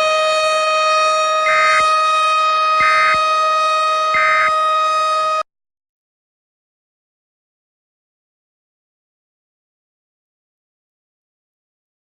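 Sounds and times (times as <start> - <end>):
buzzy alarm tone: 0.0 - 5.4.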